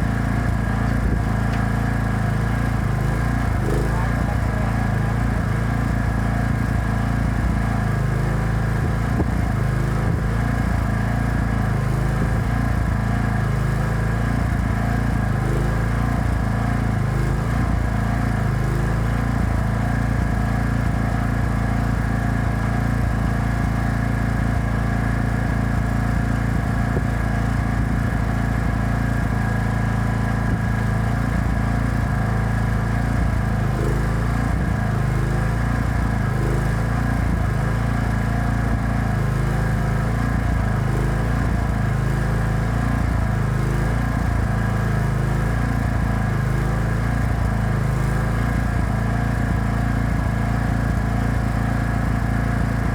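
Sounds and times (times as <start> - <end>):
generator engine running: 0.0 - 52.9.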